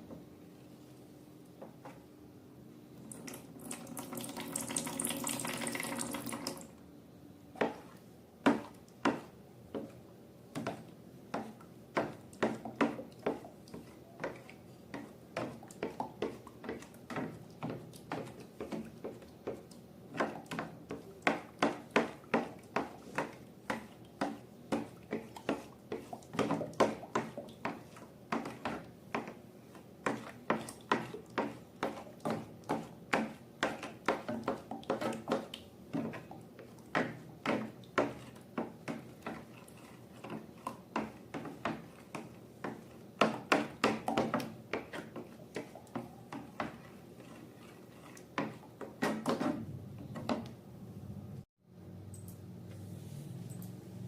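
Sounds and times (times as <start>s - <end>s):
liquid pouring: 3.1s - 6.7s.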